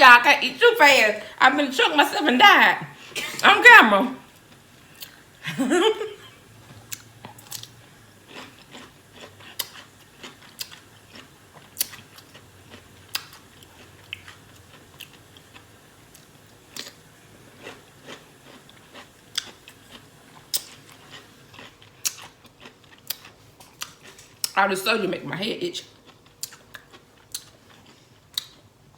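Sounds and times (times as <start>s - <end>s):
person chewing pickles: 6.6s - 24.6s, 25.8s - 28.9s.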